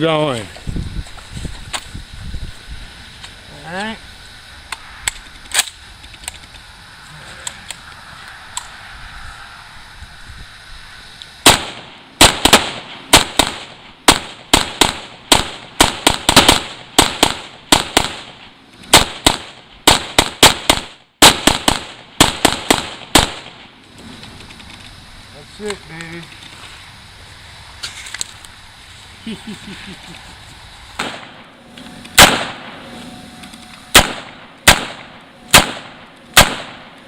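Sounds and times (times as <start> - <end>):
rifle shots: 11.4 - 23.7, 31.0 - 31.5, 32.2 - 32.9, 33.9 - 37.0.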